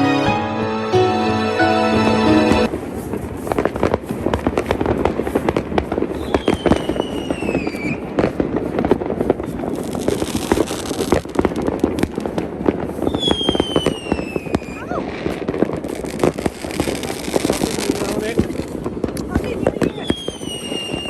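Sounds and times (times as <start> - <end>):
fireworks crackling and banging: 1.8 - 21.0
firework whistle sliding down: 6.2 - 8.0, 13.1 - 15.0, 20.1 - 21.0.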